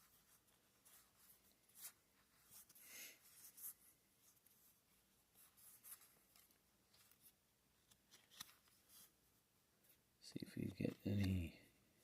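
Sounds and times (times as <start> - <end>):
trading cards rustling: 5.4 - 9.2, 9.9 - 11.6.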